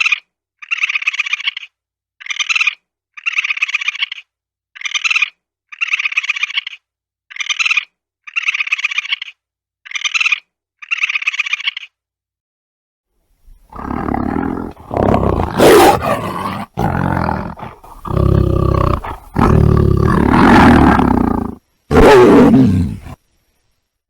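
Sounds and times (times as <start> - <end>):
big cat roaring and growling: 13.5 - 23.2.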